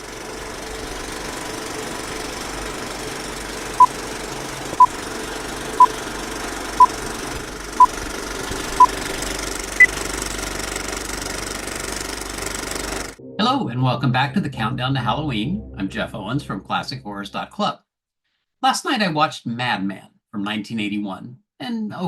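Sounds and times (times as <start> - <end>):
mechanical rattling hum: 0.0 - 13.2.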